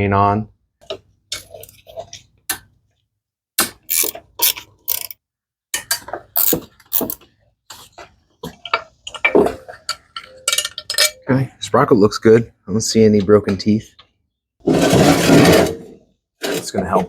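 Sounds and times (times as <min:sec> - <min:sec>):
socket ratchet clicking: 0:03.9 - 0:05.2, 0:06.4 - 0:07.2.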